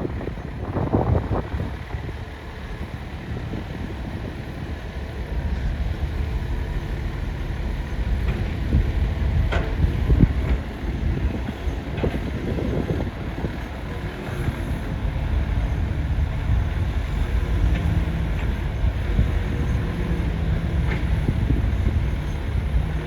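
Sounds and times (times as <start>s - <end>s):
excavator engine running: 0.0s - 23.0s.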